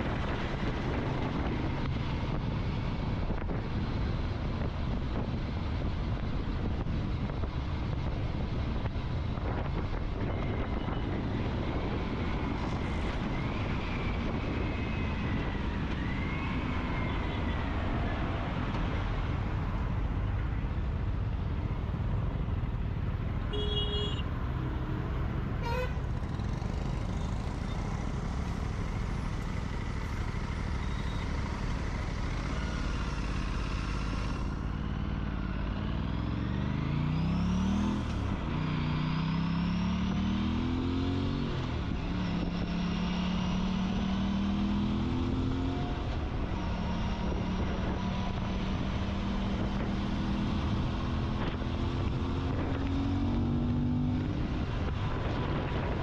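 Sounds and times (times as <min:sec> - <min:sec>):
motorcycle engine and road noise: 0:00.0 - 0:56.0
vehicle horn toot: 0:23.5 - 0:24.3, 0:25.6 - 0:26.0.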